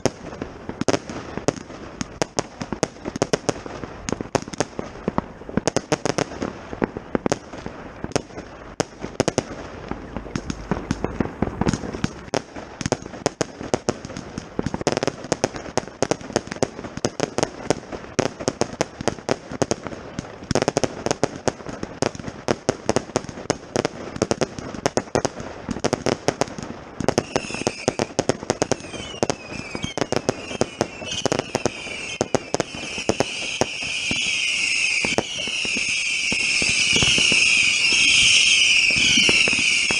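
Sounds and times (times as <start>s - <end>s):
firework bangs: 0.0s - 39.9s
firework whistles: 27.0s - 39.9s.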